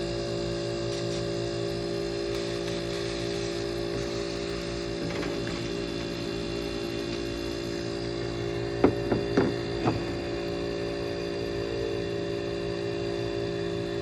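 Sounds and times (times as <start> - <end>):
air conditioner electrical hum: 0.0 - 14.0
sharp knocks: 8.8 - 10.1.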